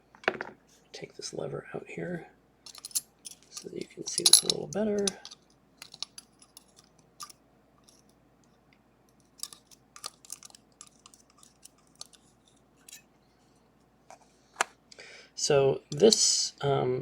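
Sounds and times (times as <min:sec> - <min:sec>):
small metal parts clicking: 0:02.6 - 0:08.1, 0:09.1 - 0:13.0.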